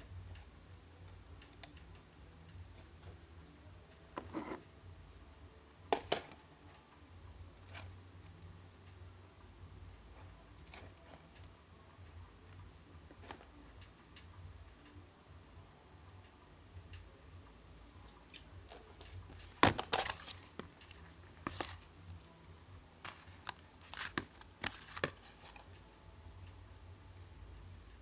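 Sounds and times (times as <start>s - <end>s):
low steady hum: 0.0s - 28.0s
toys clicking and crackling: 0.1s - 3.2s, 10.2s - 15.0s, 18.0s - 22.3s, 23.0s - 26.6s.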